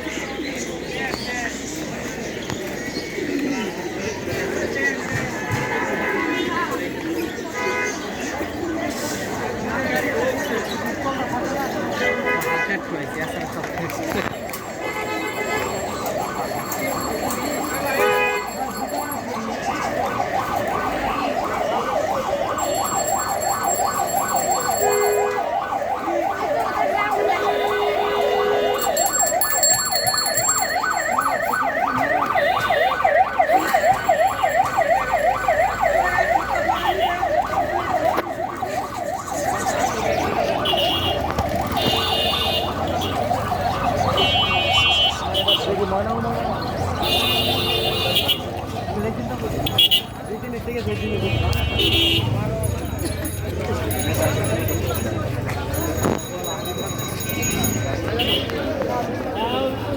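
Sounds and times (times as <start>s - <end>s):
electronic siren yelping: 14.4s - 47.1s.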